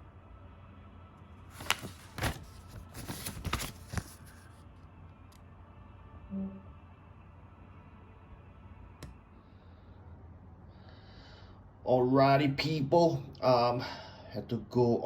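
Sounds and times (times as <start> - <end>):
packaging rustling and clicking: 1.5 - 4.5.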